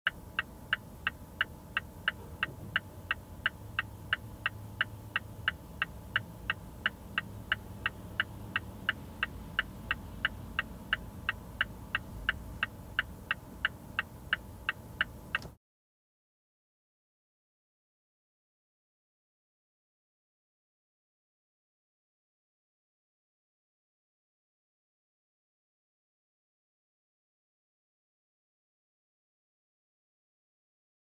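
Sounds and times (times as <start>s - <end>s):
turn signal ticking: 0.0s - 15.6s
faint low rumble: 0.1s - 15.6s.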